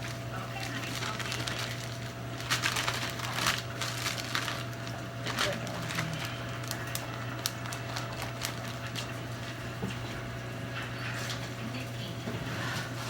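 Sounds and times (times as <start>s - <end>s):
fat popping and crackling: 0.0s - 9.6s
steady low hum: 0.0s - 13.0s.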